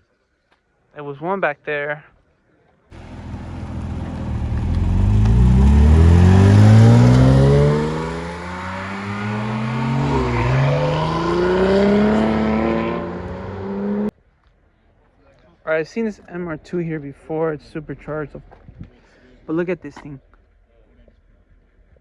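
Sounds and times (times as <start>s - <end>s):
car engine accelerating hard: 3.0s - 14.1s.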